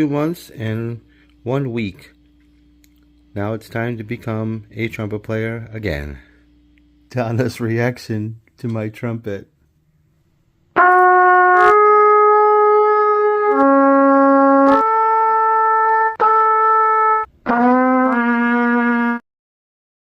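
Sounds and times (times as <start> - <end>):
trumpet playing long notes: 10.7 - 19.2.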